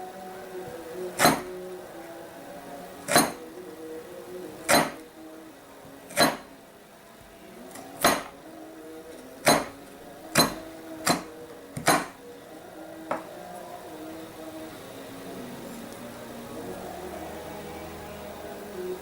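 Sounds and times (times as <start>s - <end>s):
faint steady background tones: 0.0s - 19.0s
sharp knocks: 3.1s - 3.4s, 6.1s - 6.5s, 8.0s - 8.3s, 10.4s - 12.2s.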